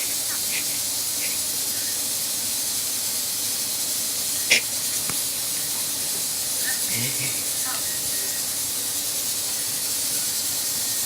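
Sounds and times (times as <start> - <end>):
steady hiss: 0.0 - 11.0
faint short laughs: 0.1 - 1.5, 6.6 - 7.8.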